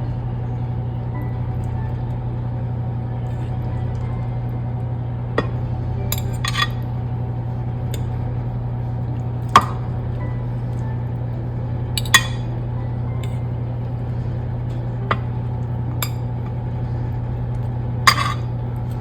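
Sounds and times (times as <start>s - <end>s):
steady low hum: 0.0s - 19.0s
utensil clinking against dish: 5.4s - 6.8s, 12.0s - 12.5s, 18.1s - 19.0s.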